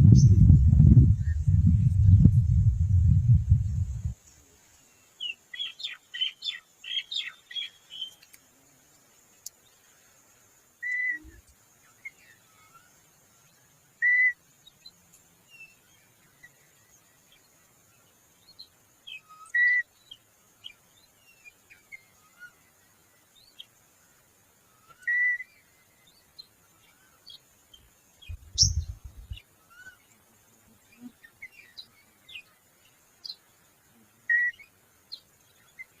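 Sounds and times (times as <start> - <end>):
birds chirping and whistling: 28.2 - 30.0.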